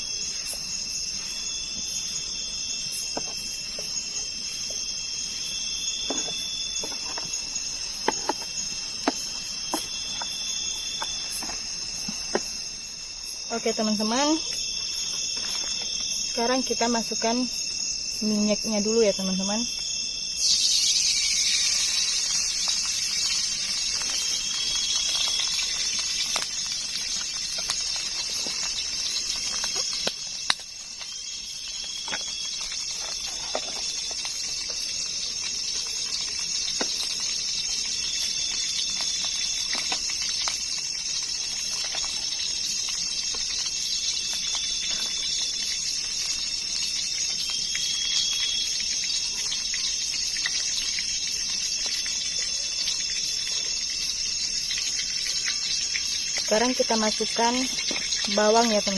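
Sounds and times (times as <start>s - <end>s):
chorus of night insects: 0.0s - 58.9s.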